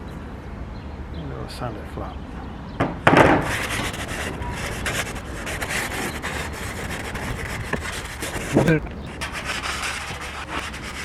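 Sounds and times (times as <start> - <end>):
sandpaper rubbing a surface: 3.4 - 11.0.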